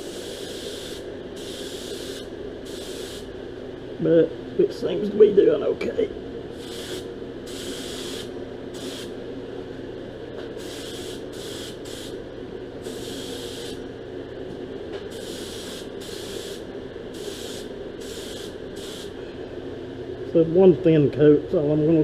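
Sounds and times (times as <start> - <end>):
paint spray gun hissing: 0.0 - 3.3, 6.6 - 9.1, 10.6 - 12.2, 12.8 - 13.8, 15.1 - 19.2
steady mechanical hum: 0.0 - 22.0.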